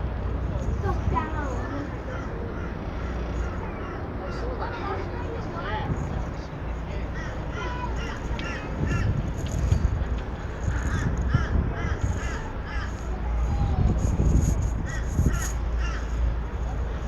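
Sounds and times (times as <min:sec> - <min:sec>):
wind noise on microphone: 0:00.0 - 0:02.0, 0:05.8 - 0:17.0
boat engine rumble: 0:00.0 - 0:17.0
birds giving harsh calls: 0:01.8 - 0:05.1, 0:06.8 - 0:17.0.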